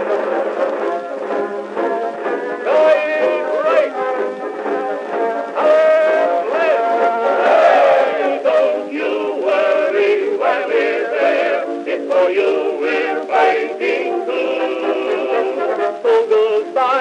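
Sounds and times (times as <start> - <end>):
man singing with band: 2.6 - 4.0.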